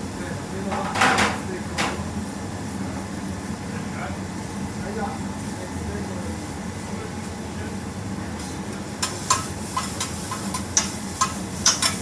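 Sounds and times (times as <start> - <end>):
kitchen utensils knocking and clicking: 9.3 - 12.0.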